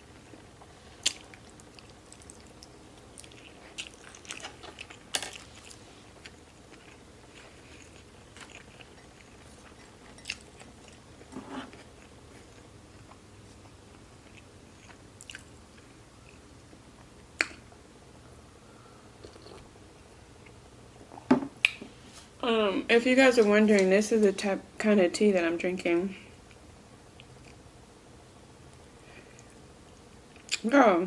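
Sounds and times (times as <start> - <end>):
person chewing food: 0.1 - 17.8, 19.2 - 21.8, 26.4 - 27.6.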